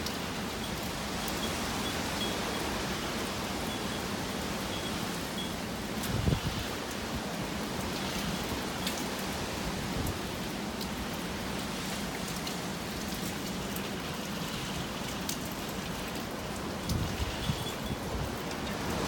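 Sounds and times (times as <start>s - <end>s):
raindrops ticking: 0.0s - 6.2s, 6.8s - 19.0s
heavy rain hiss: 0.0s - 19.0s.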